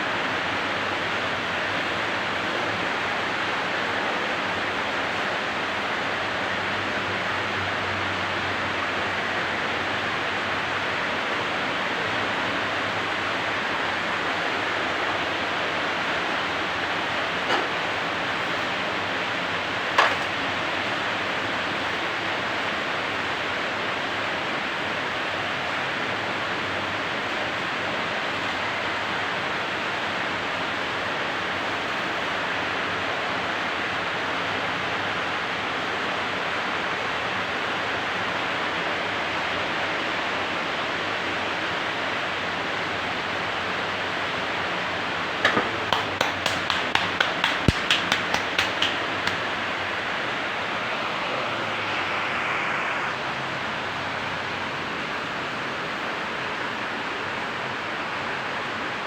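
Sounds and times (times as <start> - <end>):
sharp taps: 17.5 - 18.7, 20.0 - 20.4, 45.4 - 49.5.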